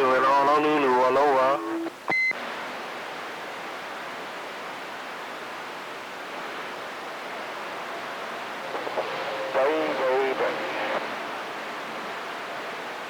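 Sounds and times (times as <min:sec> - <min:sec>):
radio static hiss: 0:00.0 - 0:02.6, 0:06.3 - 0:13.0.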